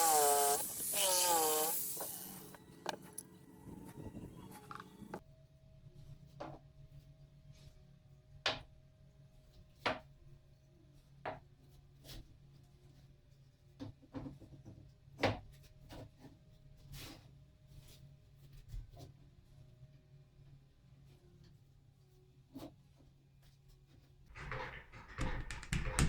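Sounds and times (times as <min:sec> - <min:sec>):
wood knocks and taps: 0:24.3 - 0:26.0.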